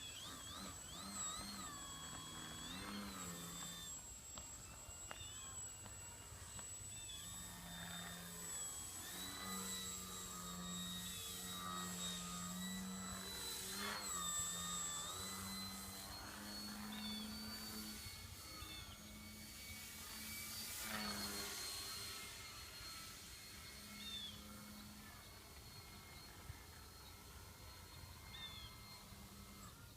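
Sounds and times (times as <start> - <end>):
rc plane motor whining: 0.0 - 29.9.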